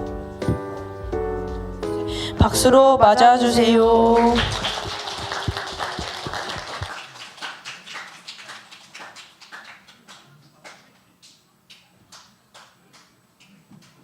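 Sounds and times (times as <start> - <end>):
audience applause: 4.2 - 10.9.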